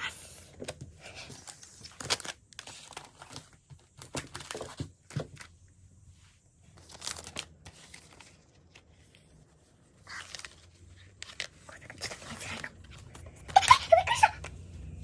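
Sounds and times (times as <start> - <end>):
packaging tearing and crinkling: 6.9 - 8.2.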